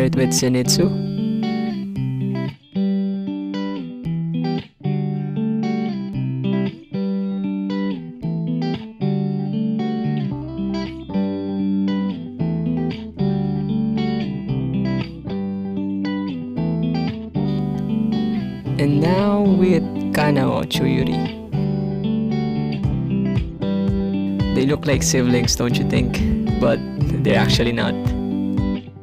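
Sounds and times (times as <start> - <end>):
plucked guitar notes: 0.0 - 29.0
low bass line: 17.4 - 28.8.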